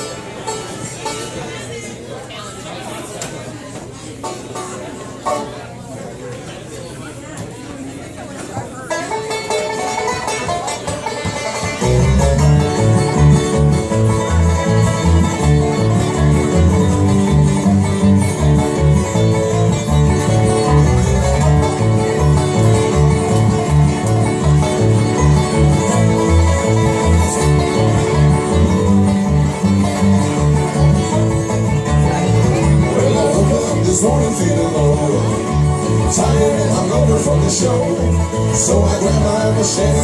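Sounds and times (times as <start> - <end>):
bluegrass band playing: 0.0 - 6.6, 7.7 - 40.0
picked banjo: 0.0 - 40.0
low bass notes: 11.8 - 40.0.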